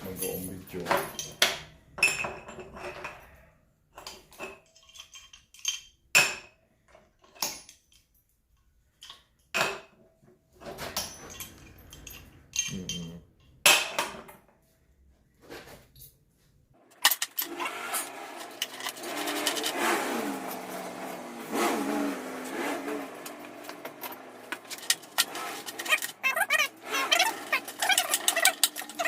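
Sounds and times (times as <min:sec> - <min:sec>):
metal clinks and clanks: 0:00.0 - 0:06.1, 0:10.6 - 0:14.0, 0:16.9 - 0:21.2, 0:22.4 - 0:29.0
scraping and handling: 0:16.8 - 0:29.0.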